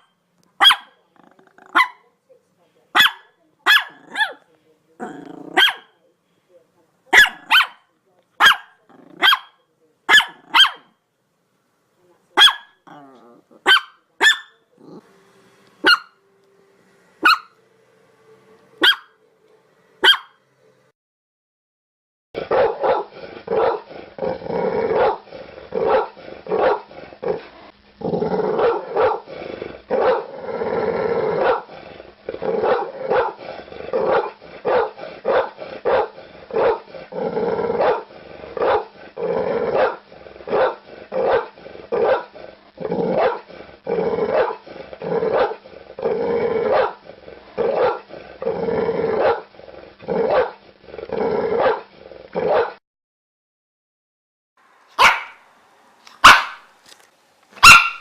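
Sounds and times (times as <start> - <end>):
dog barking: 0.0 - 1.0, 1.6 - 2.1, 2.9 - 4.4, 5.5 - 6.0, 7.1 - 10.9, 12.4 - 12.9, 13.6 - 14.6, 15.8 - 16.2, 17.2 - 17.6, 18.8 - 19.1, 20.0 - 20.4, 22.5 - 23.9, 25.0 - 25.2, 25.8 - 26.9, 28.6 - 29.3, 30.0 - 30.3, 31.4 - 31.7, 32.6 - 33.4, 34.0 - 36.9, 37.8 - 38.9, 39.7 - 42.4, 43.2 - 43.5, 44.3 - 44.6, 45.3 - 45.6, 46.7 - 47.0, 47.7 - 48.0, 49.2 - 49.5, 50.3 - 50.6, 51.6 - 52.8, 55.0 - 55.4, 56.2 - 56.7, 57.6 - 58.0.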